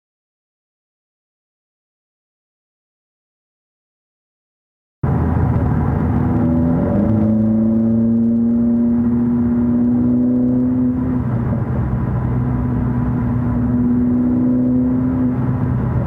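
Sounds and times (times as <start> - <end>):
engine running: 5.0 - 16.0
steering groaning tone: 5.0 - 16.0.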